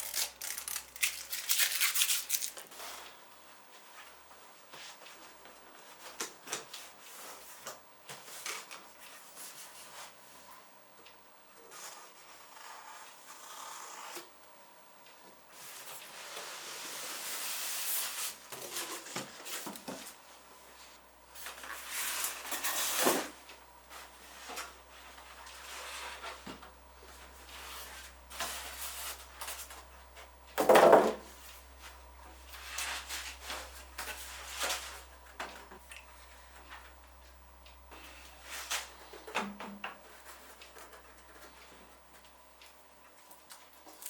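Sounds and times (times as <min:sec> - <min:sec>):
computer parts rustling and scraping: 0:00.0 - 0:03.1, 0:31.4 - 0:37.0
low steady hum: 0:14.3 - 0:44.0.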